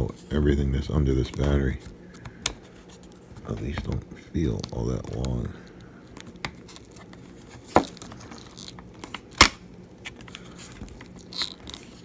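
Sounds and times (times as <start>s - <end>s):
adhesive strip crackling as peeled: 6.1s - 12.0s.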